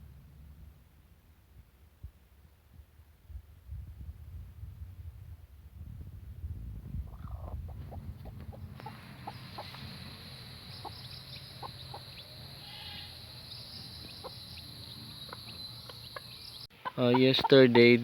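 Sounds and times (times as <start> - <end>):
hen clucking: 7.1 - 18.0
high insect drone: 9.0 - 16.6.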